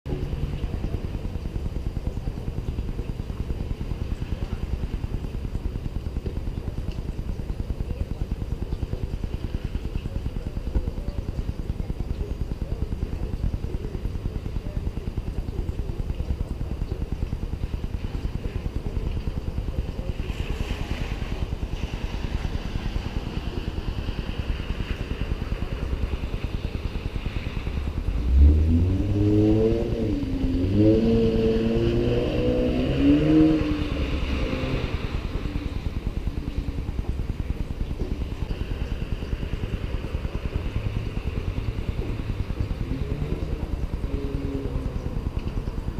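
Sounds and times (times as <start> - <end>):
car engine idling and revving: 21.0 - 45.9.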